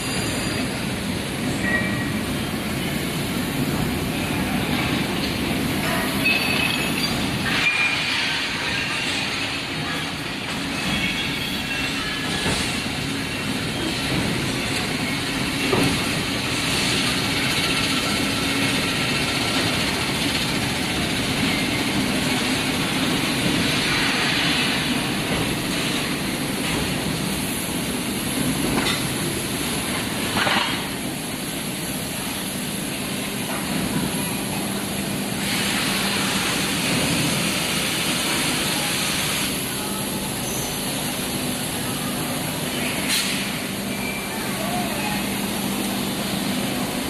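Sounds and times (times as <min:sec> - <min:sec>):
hiss: 0:35.3 - 0:41.0, 0:43.0 - 0:44.0.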